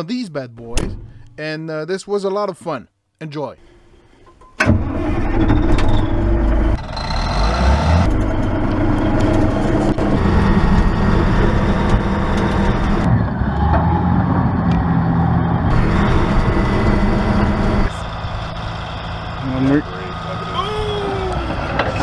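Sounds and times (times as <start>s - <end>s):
bulldozer diesel engine running: 4.6s - 22.0s.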